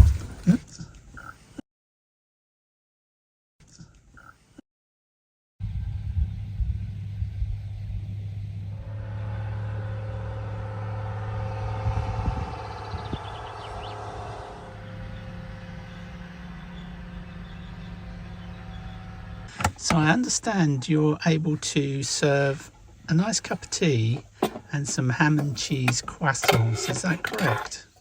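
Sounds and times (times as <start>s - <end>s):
vehicle engine humming: 5.6s - 28.0s
higher tone: 8.5s - 19.6s.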